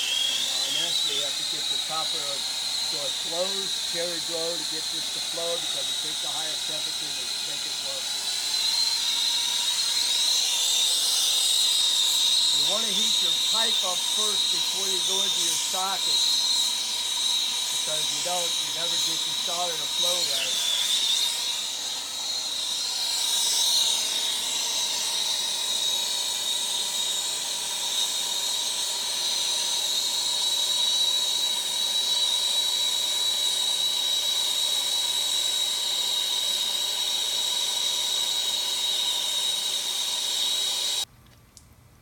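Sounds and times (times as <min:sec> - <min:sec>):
thin high whistle: 0:00.0 - 0:27.3
torch flame hissing: 0:00.0 - 0:29.1.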